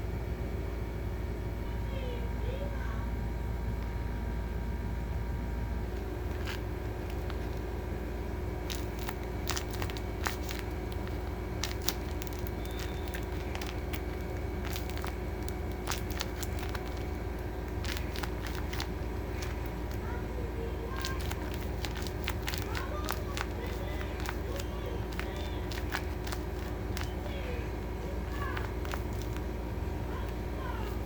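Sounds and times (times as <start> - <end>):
steady low hum: 0.0 - 31.0
candy wrapper crinkling: 6.0 - 7.8, 8.5 - 31.0.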